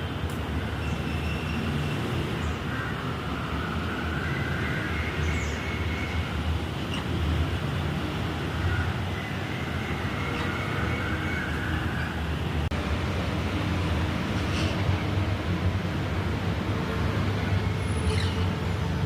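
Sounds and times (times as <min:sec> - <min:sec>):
road traffic rumble: 0:00.0 - 0:19.0.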